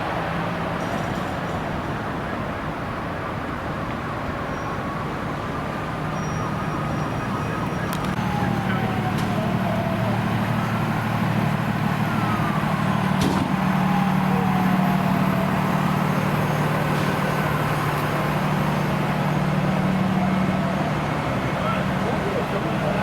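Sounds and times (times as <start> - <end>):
faint siren wailing: 0.0 - 23.0
diesel engine idling: 6.6 - 23.0.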